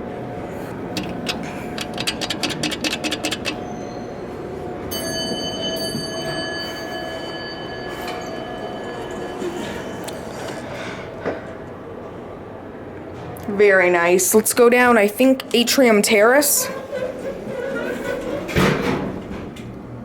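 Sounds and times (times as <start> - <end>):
electronic chime tone: 4.9 - 11.1.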